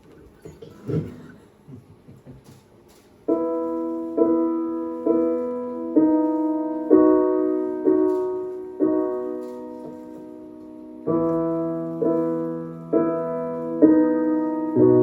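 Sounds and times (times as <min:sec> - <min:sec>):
piano chords: 0:03.1 - 0:15.0.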